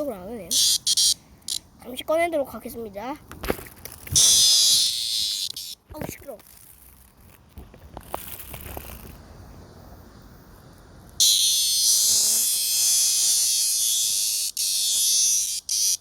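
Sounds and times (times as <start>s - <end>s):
cicada buzzing call: 0.0s - 1.7s, 4.1s - 5.9s, 11.2s - 16.0s.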